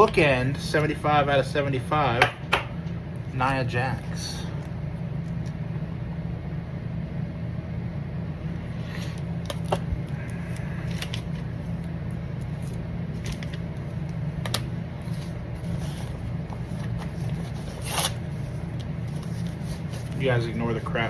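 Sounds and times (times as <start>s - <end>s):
low background hum: 0.0s - 21.0s
trading cards crinkling: 8.9s - 21.0s.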